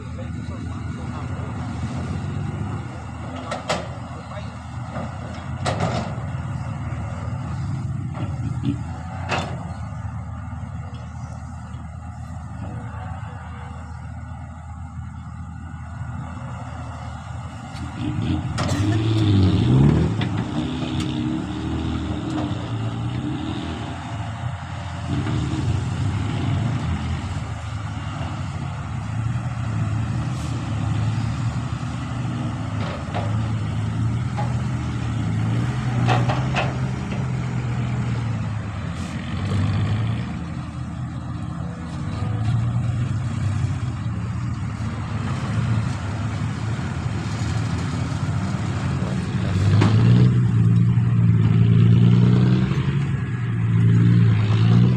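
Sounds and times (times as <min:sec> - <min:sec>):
excavator diesel engine running: 0:00.0 - 0:54.9.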